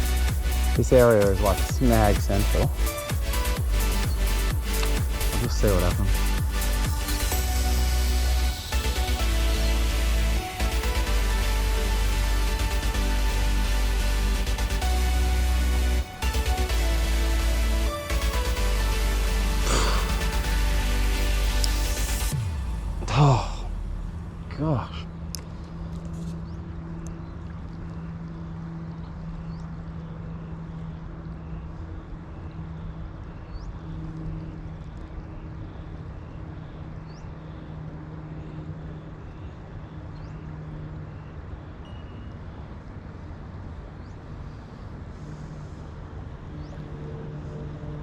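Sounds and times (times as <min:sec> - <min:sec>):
low engine hum: 0:00.0 - 0:48.0
noisy background: 0:00.0 - 0:48.0
faint high chirps: 0:41.8 - 0:42.4.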